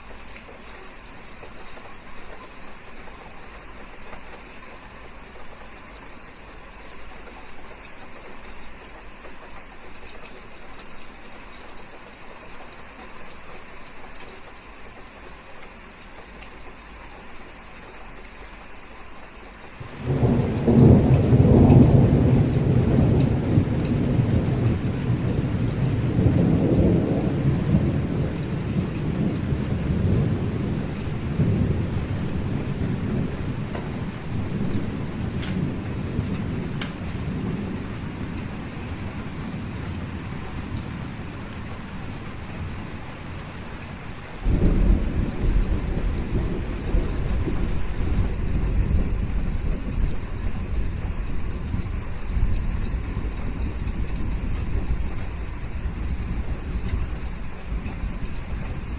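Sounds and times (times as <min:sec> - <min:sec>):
steady rainfall: 0:00.0 - 0:58.9
thunder rolling: 0:19.9 - 0:38.3, 0:44.4 - 0:55.1.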